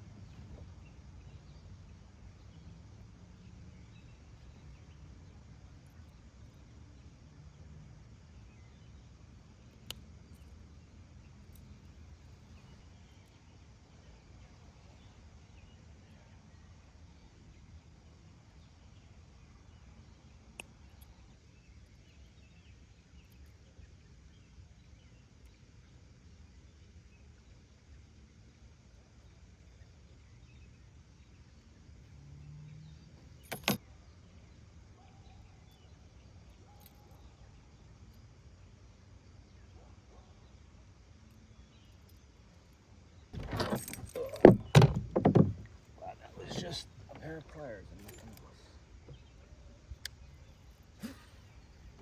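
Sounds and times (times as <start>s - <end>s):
sharp click: 33.4s - 33.8s.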